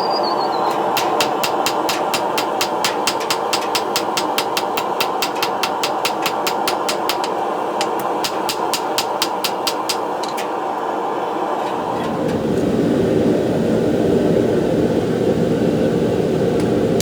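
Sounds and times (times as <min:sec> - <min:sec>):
hammer blows on hot steel: 0:00.6 - 0:10.5
steady rushing roar: 0:00.7 - 0:17.0.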